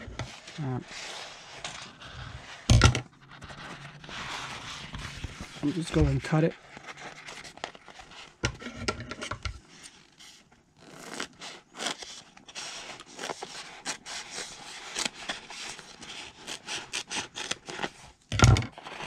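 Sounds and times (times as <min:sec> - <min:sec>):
foam rubber being cut: 0:10.8 - 0:18.0.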